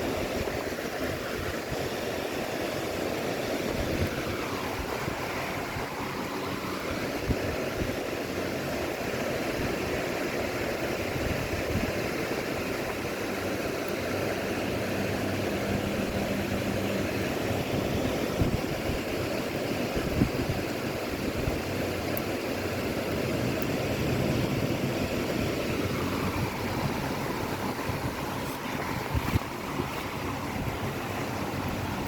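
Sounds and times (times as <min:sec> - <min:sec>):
strong storm wind: 0:00.0 - 0:32.0
wind buffeting microphone: 0:00.0 - 0:32.0.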